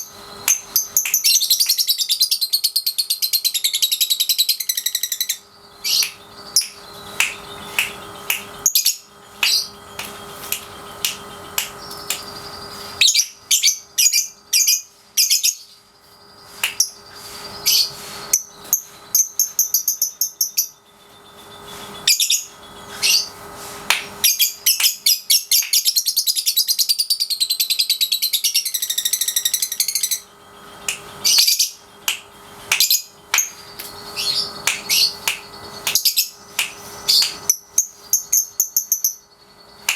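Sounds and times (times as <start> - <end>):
lovebird chirping: 0.0 - 23.4, 32.8 - 36.4
faint steady hum: 0.0 - 39.9
rapid chattering bird trill: 4.0 - 15.6.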